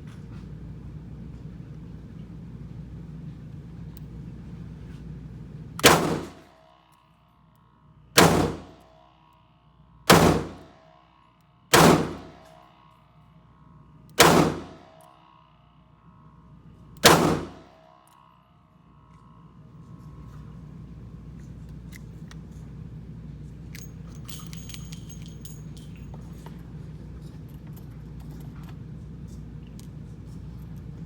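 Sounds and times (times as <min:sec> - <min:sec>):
revolver gunshots: 0:05.8 - 0:06.5, 0:08.2 - 0:08.8, 0:10.1 - 0:10.8, 0:11.7 - 0:12.6, 0:14.2 - 0:15.0, 0:17.0 - 0:17.7.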